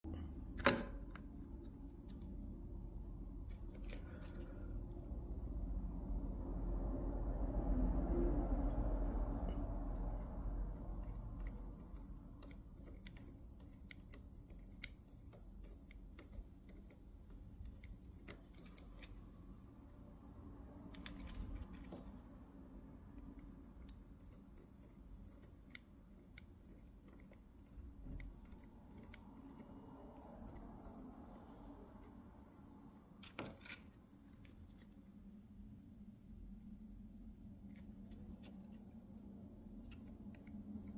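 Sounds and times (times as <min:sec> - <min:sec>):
low rumble: 0:01.3 - 0:11.4.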